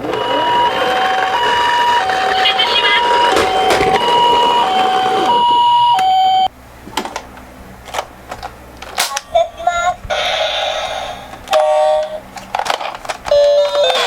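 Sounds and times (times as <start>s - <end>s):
toy two-tone ambulance siren: 0.0s - 6.5s, 13.3s - 14.0s.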